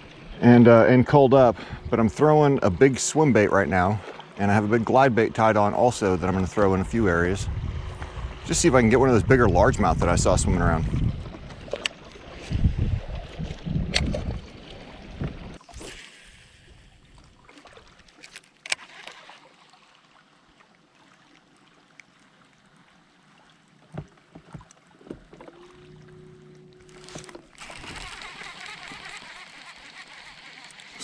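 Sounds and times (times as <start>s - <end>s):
wind rumbling on microphone: 1.2s - 2.8s, 5.9s - 15.6s
fishing gear clicks and knocks: 18.1s - 19.1s, 26.8s - 31.0s
low hum: 25.5s - 31.0s.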